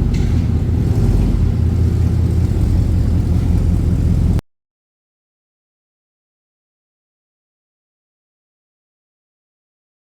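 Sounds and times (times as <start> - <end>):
engine running through exhaust: 0.0 - 4.4.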